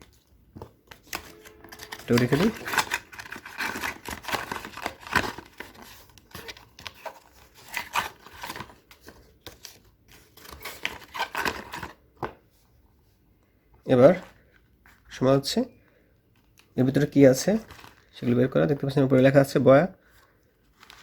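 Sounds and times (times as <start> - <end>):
paper and cardboard rustling: 0.0 - 12.6, 16.9 - 18.5, 20.1 - 21.0.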